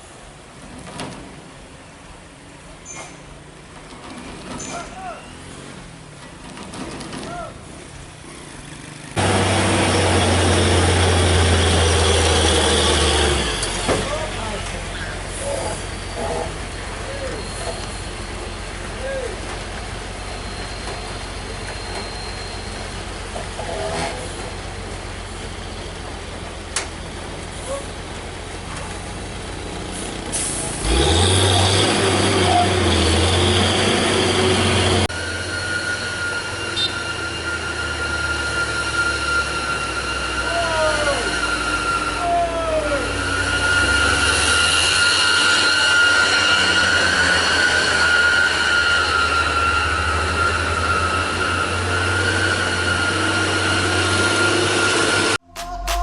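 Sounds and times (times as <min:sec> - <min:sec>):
truck diesel engine under load: 0:00.0 - 0:56.0
high whine: 0:52.6 - 0:56.0.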